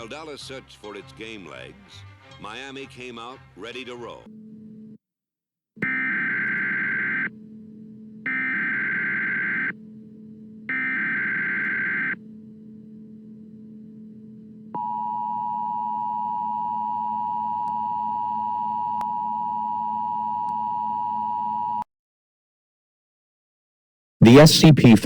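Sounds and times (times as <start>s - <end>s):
two-tone attention signal: 5.8s - 7.3s, 8.3s - 9.7s, 10.7s - 12.2s
low steady hum: 7.4s - 18.6s
buzzy digital header bursts: 8.5s - 9.7s.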